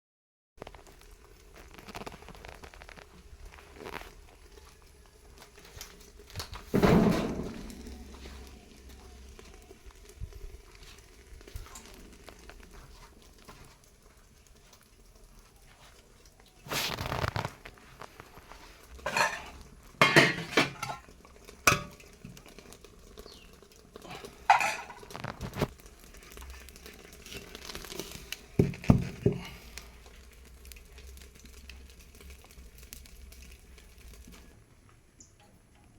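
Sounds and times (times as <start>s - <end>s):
loud knocks and scrapes: 6.7s - 8.0s
cookware clattering: 19.0s - 21.1s, 21.7s - 22.0s, 24.5s - 25.2s.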